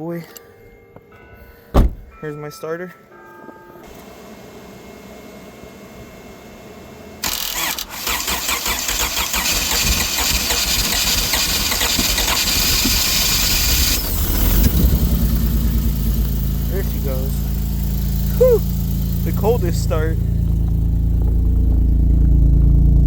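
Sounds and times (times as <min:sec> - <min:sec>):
car engine idling: 0:04.2 - 0:23.0
starter motor cranking: 0:07.2 - 0:22.3.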